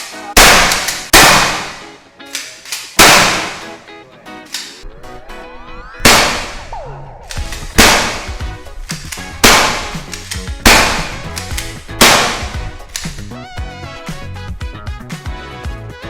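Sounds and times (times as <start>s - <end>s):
gunshots with echo: 0.0s - 3.8s, 6.0s - 13.3s
background music: 0.0s - 16.0s.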